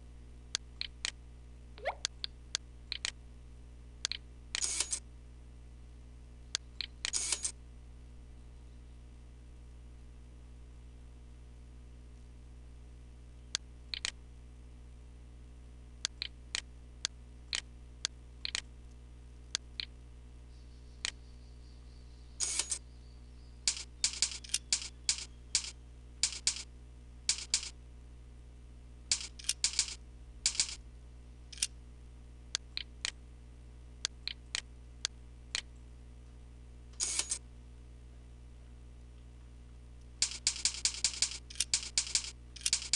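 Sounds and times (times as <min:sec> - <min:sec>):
low electrical hum: 0:00.0 - 0:42.9
mouse and keyboard clicks: 0:02.9 - 0:03.2, 0:04.1 - 0:05.0, 0:13.9 - 0:14.2, 0:18.4 - 0:18.6, 0:23.7 - 0:26.7, 0:29.1 - 0:30.8, 0:31.5 - 0:31.7, 0:34.2 - 0:34.7, 0:40.2 - 0:42.9.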